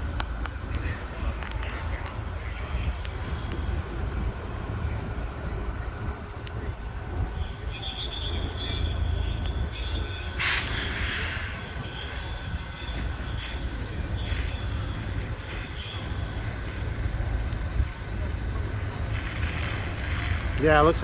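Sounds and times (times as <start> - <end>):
engines idling: 0.0 - 21.0
steady whine: 0.0 - 21.0
sharp hiss: 10.4 - 12.4.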